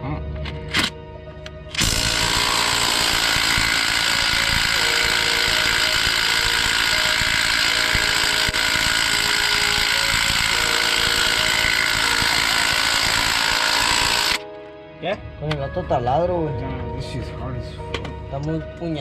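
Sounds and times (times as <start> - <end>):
hammering power tool: 1.7 - 14.5.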